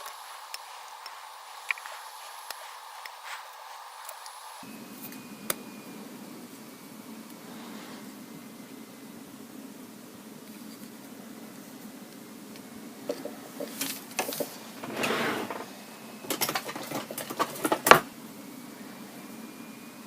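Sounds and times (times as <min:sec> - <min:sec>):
steady low hum: 0:00.0 - 0:10.3.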